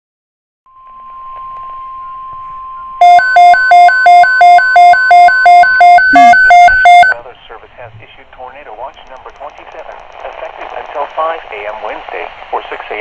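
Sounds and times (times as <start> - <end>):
faint steady tone: 0.7 - 8.0
alternating two-pitch alarm beeps: 2.6 - 7.2.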